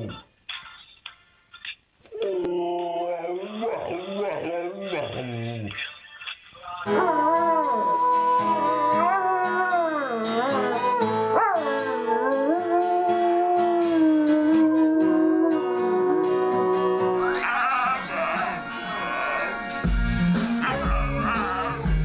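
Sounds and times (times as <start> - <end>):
music with held notes: 6.8 - 22.0
dog howling: 6.9 - 18.5.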